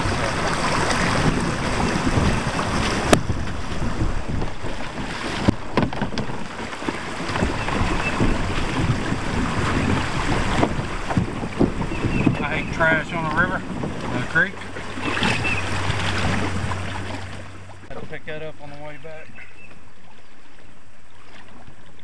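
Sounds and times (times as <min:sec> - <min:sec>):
wind buffeting microphone: 0:00.0 - 0:21.2
creek water rushing: 0:00.0 - 0:22.0
irregular knocks: 0:05.4 - 0:06.6.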